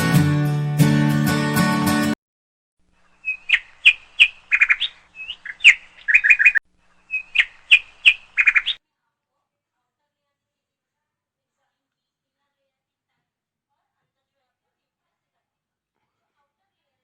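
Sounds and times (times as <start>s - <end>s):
guitar music: 0.0s - 2.2s
songbird singing: 3.0s - 8.8s.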